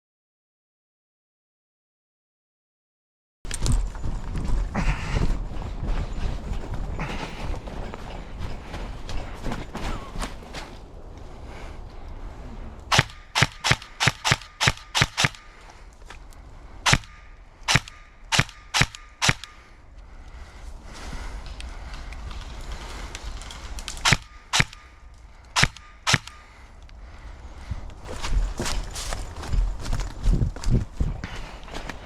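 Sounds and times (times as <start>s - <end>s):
sharp airsoft shots: 12.9s - 15.6s, 16.8s - 19.8s, 24.0s - 25.0s, 25.6s - 26.6s.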